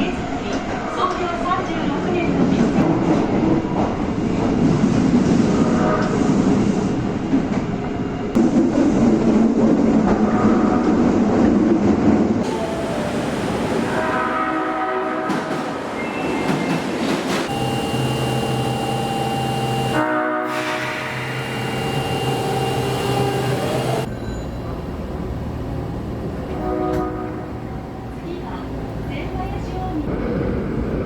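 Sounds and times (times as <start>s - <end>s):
subway train wheels rumbling: 0.0s - 31.0s
electric train horn: 12.4s - 15.6s, 17.5s - 24.1s, 26.5s - 27.6s.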